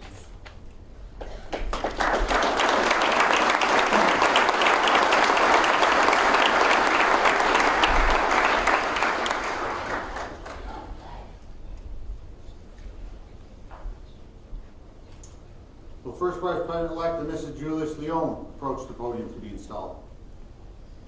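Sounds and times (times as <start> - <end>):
audience applauding: 1.5 - 11.0.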